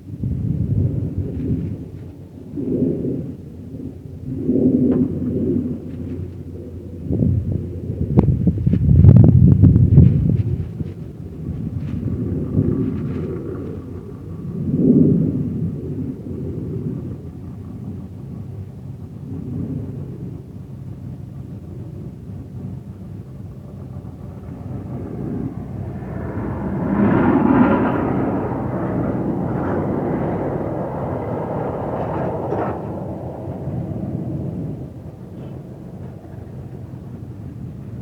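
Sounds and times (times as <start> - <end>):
low rumble of wind: 0.0 - 38.0
off-road vehicle engine: 10.3 - 38.0.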